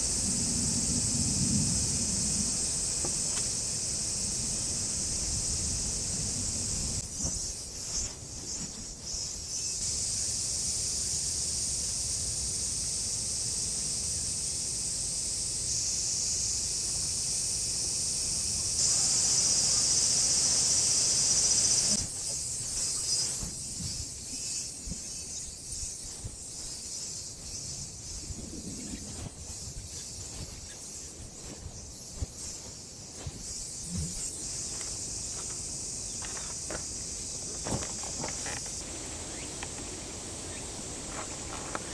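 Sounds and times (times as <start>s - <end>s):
high-pitched insect chorus: 0.0s - 41.9s.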